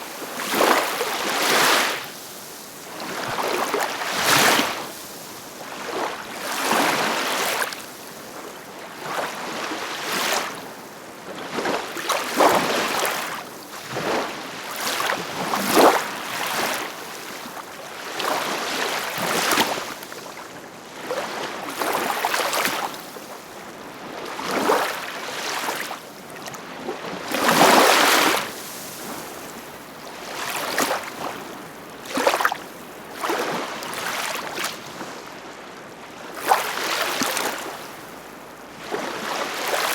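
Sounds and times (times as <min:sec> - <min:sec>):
ocean waves breaking: 0:27.0 - 0:34.8.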